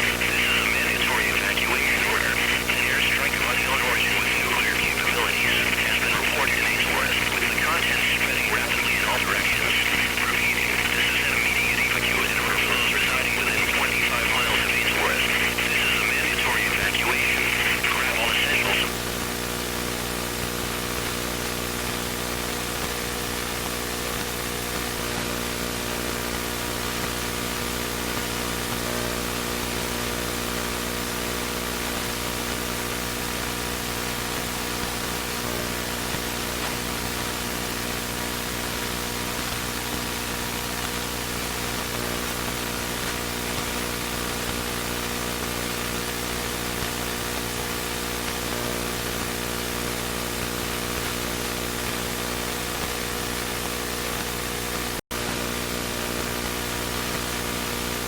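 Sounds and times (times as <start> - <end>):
electrical buzzing hum: 0.0 - 19.0
static hiss: 0.0 - 19.0.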